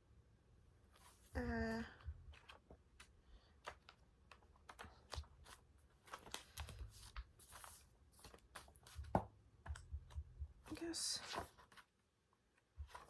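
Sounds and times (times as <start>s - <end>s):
soft low thumps: 1.4s - 2.4s, 8.9s - 10.8s
paper pages rustling: 2.2s - 9.9s, 10.6s - 12.0s, 12.8s - 13.0s.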